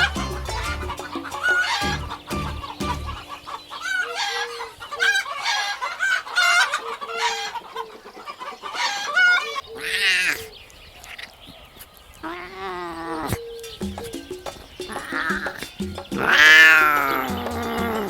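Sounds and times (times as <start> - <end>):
background music with low beat: 0.0 - 3.7, 13.7 - 18.0
chickens clucking: 0.0 - 11.2.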